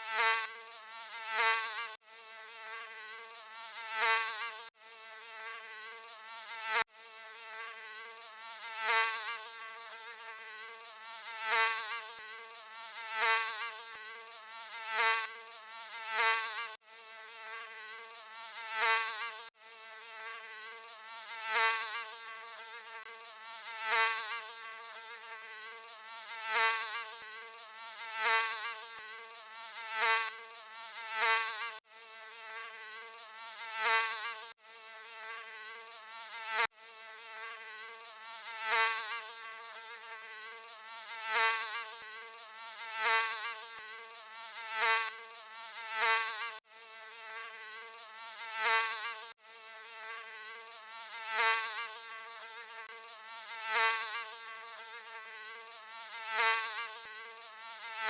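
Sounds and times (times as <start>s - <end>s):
mosquito buzzing: 0.0s - 58.0s.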